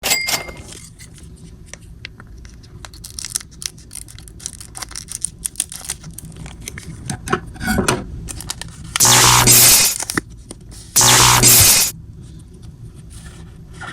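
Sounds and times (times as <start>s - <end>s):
foil wrapper crackling and tearing: 2.8s - 6.8s.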